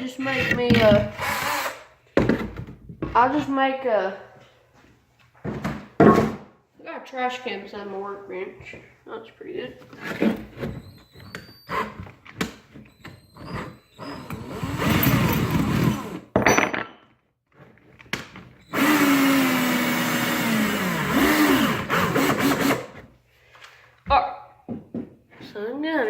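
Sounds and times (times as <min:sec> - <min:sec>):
electric drill running: 0:01.2 - 0:01.8, 0:12.9 - 0:16.3, 0:18.6 - 0:22.9.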